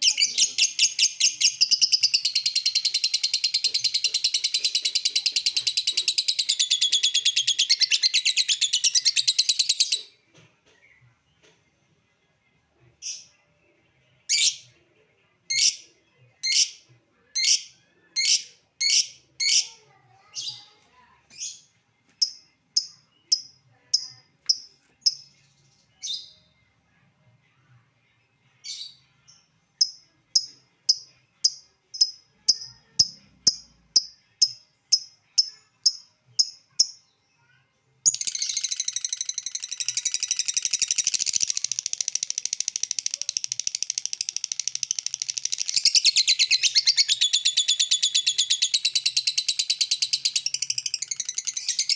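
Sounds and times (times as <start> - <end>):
lovebird chirping: 0.0 - 10.1, 38.1 - 51.9
lovebird rapid chatter: 38.1 - 51.9.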